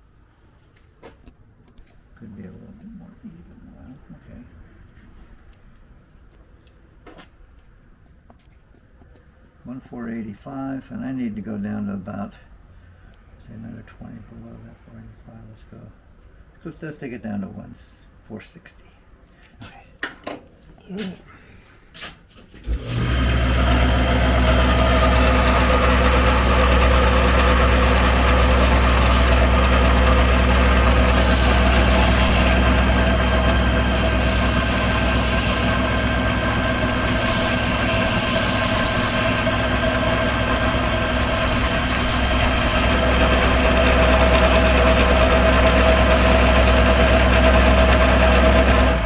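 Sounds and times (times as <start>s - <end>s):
lathe motor hum: 22.7s - 49.0s
high cutting hiss: 33.9s - 35.9s, 37.0s - 39.6s.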